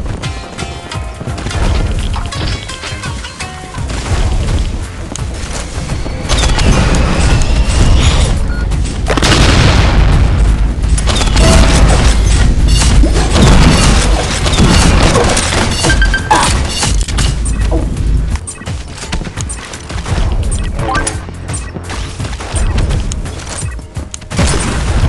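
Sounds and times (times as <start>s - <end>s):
fireworks booming and crackling: 3.8s - 16.0s.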